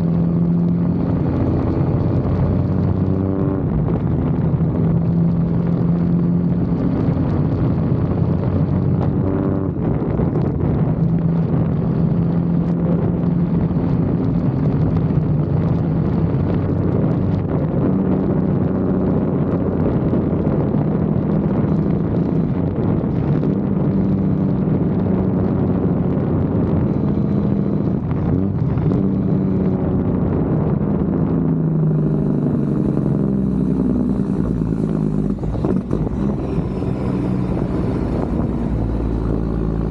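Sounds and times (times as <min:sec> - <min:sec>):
truck diesel engine droning: 0:00.0 - 0:39.9.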